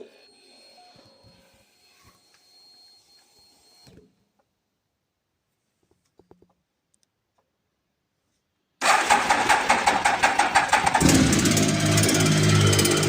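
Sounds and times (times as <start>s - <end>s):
electric starter cranking: 8.8s - 13.0s
motorcycle engine idling: 8.9s - 13.0s.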